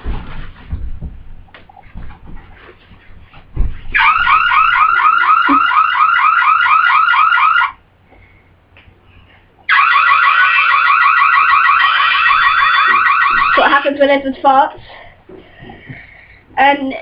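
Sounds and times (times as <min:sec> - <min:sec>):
police siren yelping: 0:04.0 - 0:07.8, 0:09.7 - 0:13.8.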